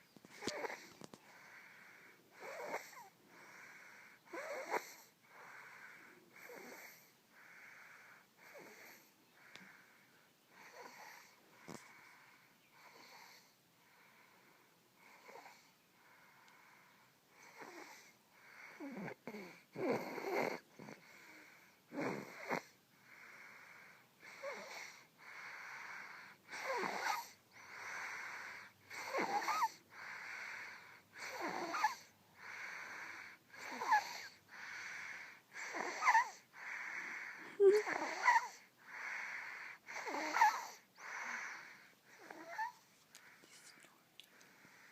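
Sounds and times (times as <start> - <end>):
people snoring: 0.4 - 9.8, 17.4 - 43.4.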